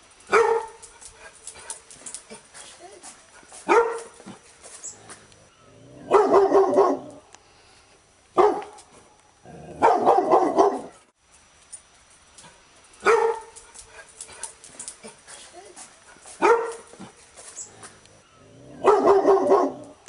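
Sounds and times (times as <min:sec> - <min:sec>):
dog barking: 0:00.3 - 0:00.8, 0:03.6 - 0:04.4, 0:06.0 - 0:07.2, 0:08.4 - 0:08.8, 0:09.8 - 0:11.0, 0:13.0 - 0:13.6, 0:15.0 - 0:17.1, 0:18.8 - 0:20.0.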